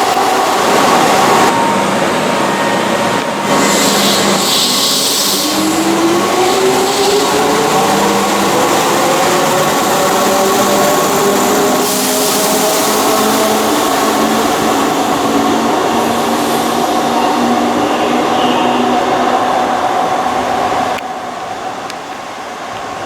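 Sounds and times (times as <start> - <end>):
electric train motors whining: 0.0 - 22.5
train cars rumbling: 0.0 - 23.0
hiss: 3.5 - 17.3.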